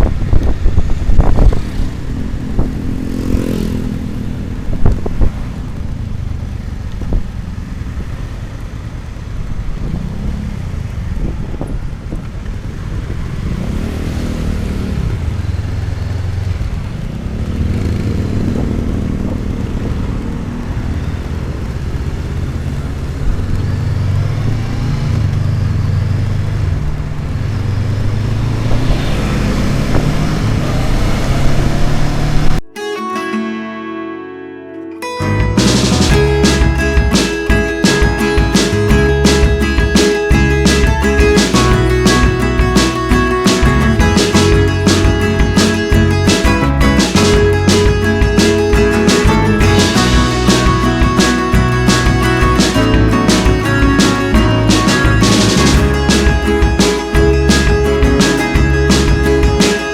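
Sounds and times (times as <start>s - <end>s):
wind buffeting microphone: 0.0s - 7.4s, 9.5s - 13.7s
motorcycle engine running: 35.3s - 59.9s.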